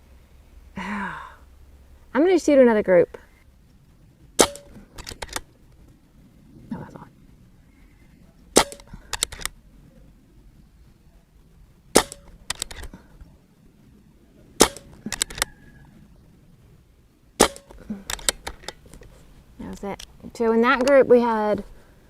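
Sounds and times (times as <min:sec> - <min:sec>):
air rifle shots: 0:04.4 - 0:05.4, 0:08.5 - 0:09.5, 0:11.9 - 0:12.9, 0:14.6 - 0:15.5, 0:17.4 - 0:18.6
rifle action clicks: 0:04.4 - 0:05.5, 0:08.6 - 0:09.6, 0:12.0 - 0:12.9, 0:14.6 - 0:15.5, 0:17.4 - 0:18.9.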